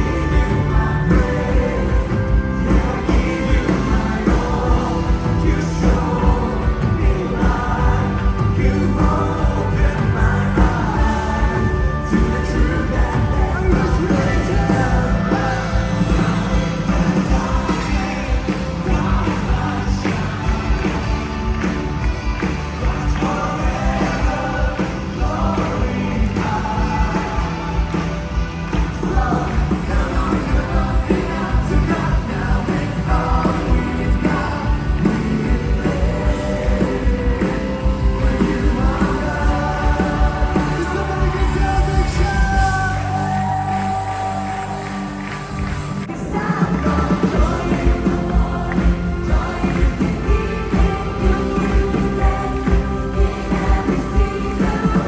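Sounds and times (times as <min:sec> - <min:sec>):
people singing: 0:00.0 - 0:55.0
worship band with steady beat: 0:00.0 - 0:55.0
person singing: 0:46.1 - 0:55.0.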